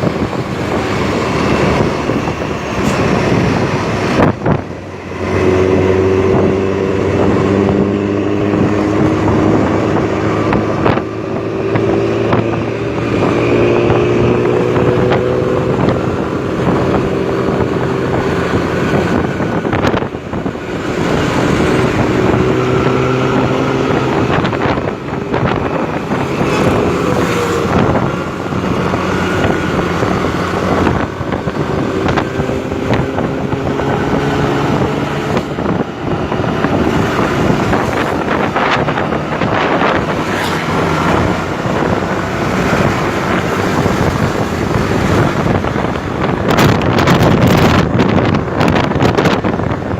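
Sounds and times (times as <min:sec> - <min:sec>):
bus diesel engine under load: 0:00.0 - 0:49.9.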